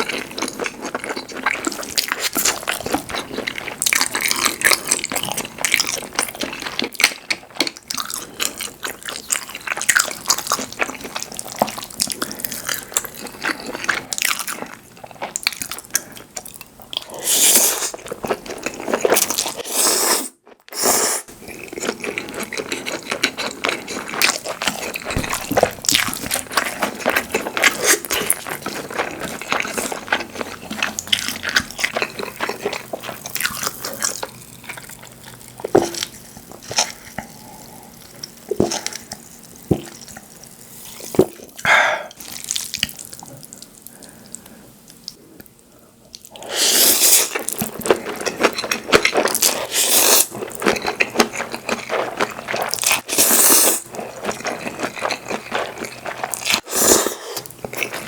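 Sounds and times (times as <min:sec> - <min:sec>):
slurping noodles: 0:19.6 - 0:21.3, 0:46.4 - 0:47.5, 0:53.0 - 0:53.9, 0:56.6 - 0:58.0.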